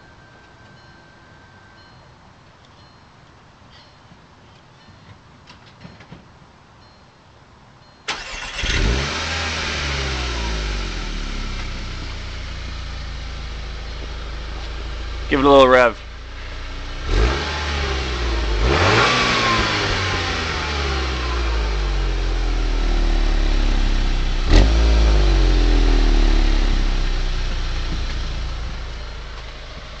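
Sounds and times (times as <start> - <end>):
car engine revving: 8.1 - 30.0.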